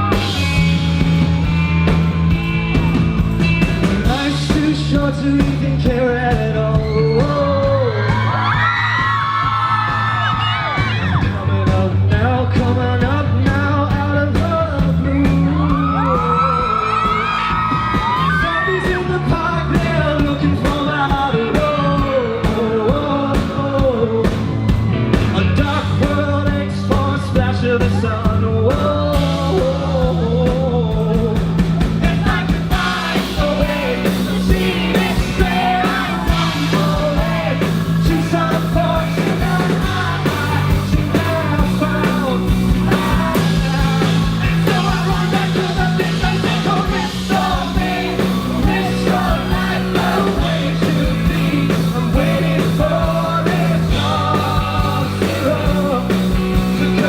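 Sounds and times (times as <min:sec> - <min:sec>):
rock band playing: 0:00.0 - 0:57.0
man singing: 0:03.8 - 0:08.6, 0:11.2 - 0:24.6, 0:25.3 - 0:57.0.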